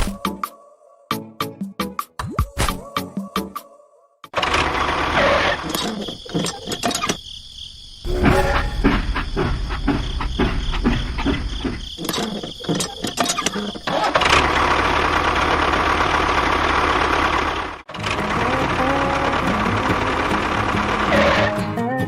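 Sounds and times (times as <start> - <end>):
engine cranking and running: 4.4 - 5.8, 12.8 - 21.6.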